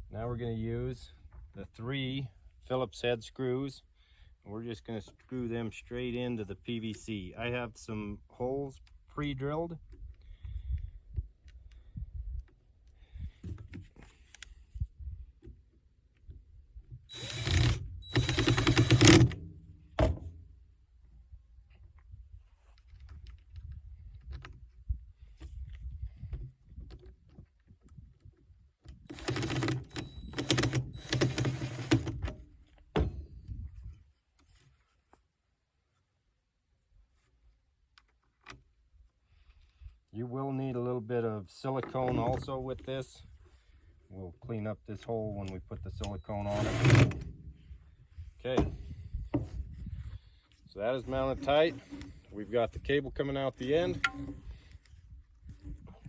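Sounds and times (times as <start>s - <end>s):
power drill driving screws: 17.1s - 19.4s, 29.1s - 32.3s, 46.4s - 47.2s
handling clicks and knocks: 53.6s - 54.4s.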